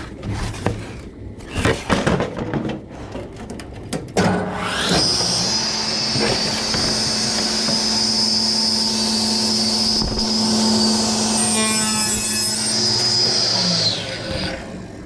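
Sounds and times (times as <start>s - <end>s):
table saw cutting plywood: 4.3s - 15.0s.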